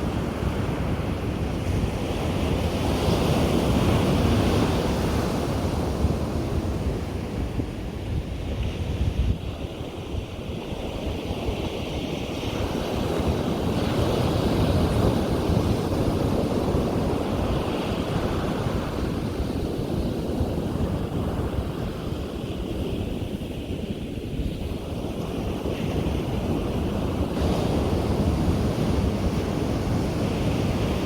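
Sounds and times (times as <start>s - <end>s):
wind buffeting microphone: 0.0s - 31.0s
ocean waves breaking: 10.7s - 31.0s.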